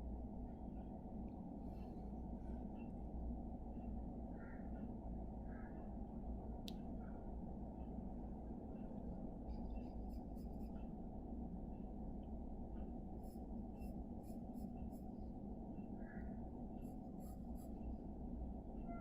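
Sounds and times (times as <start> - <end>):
low background hum: 0.0 - 19.0
pencil strokes scratching on paper: 9.6 - 10.9, 13.1 - 15.2, 16.8 - 18.0.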